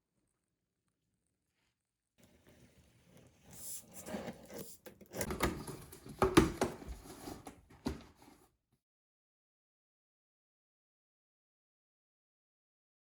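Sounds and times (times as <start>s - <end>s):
rustling of objects: 2.2s - 8.5s.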